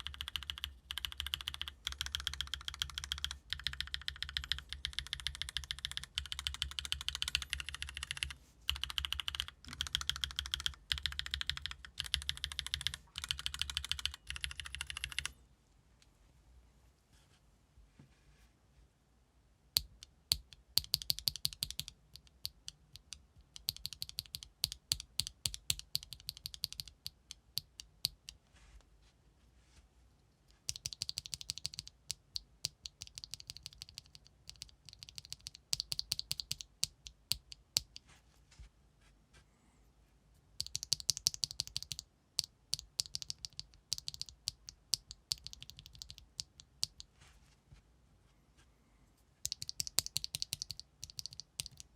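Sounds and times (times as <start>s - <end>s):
mechanical keyboard typing: 0.0s - 15.3s, 19.8s - 28.3s, 30.6s - 38.0s, 40.6s - 47.1s, 49.4s - 51.9s.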